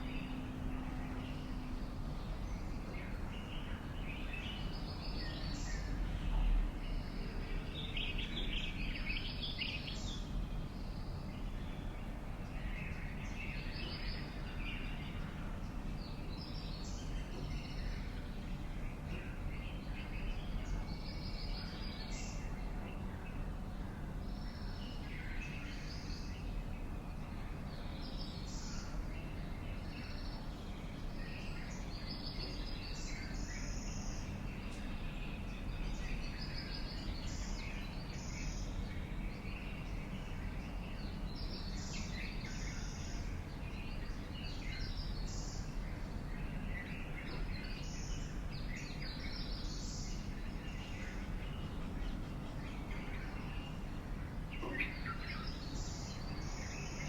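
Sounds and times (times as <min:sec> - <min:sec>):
birds chirping: 0:27.9 - 0:57.0.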